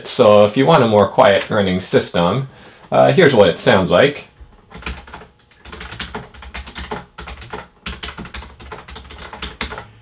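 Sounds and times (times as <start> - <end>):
typing on keyboard: 4.5 - 9.9.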